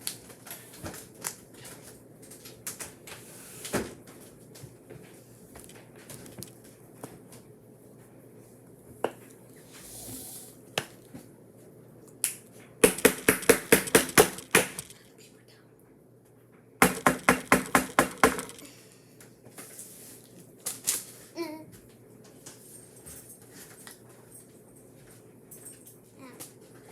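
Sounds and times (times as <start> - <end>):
rapid sharp clicking taps: 12.8 - 15.0, 16.8 - 18.6.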